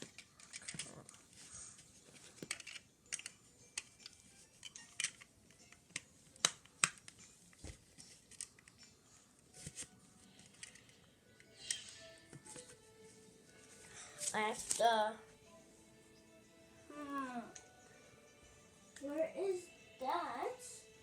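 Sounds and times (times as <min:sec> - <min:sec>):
plastic bricks clicking and rattling: 0:00.0 - 0:01.3, 0:02.1 - 0:03.9.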